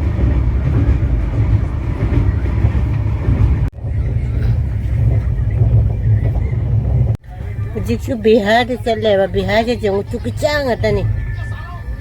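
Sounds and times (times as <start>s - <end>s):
train wheels rumbling on track: 0.0s - 12.0s.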